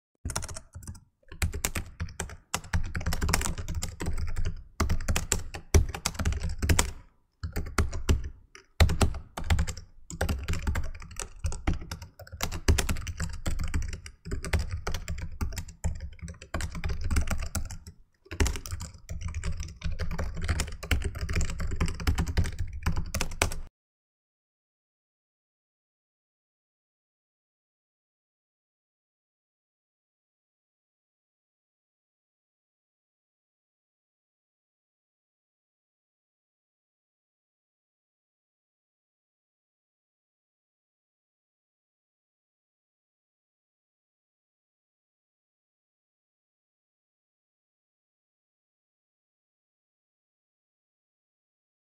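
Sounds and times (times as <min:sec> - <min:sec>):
fast typing on keyboard: 0:00.3 - 0:23.7.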